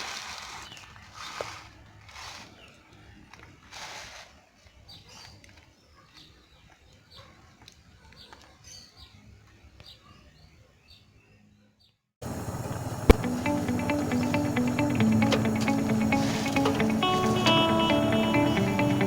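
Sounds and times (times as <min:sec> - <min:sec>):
low steady hum: 0:12.2 - 0:19.0.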